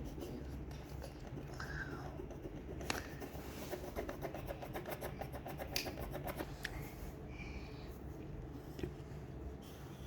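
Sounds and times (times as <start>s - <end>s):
pencil scribbling on paper: 0.0s - 6.6s
low steady hum: 0.0s - 10.0s.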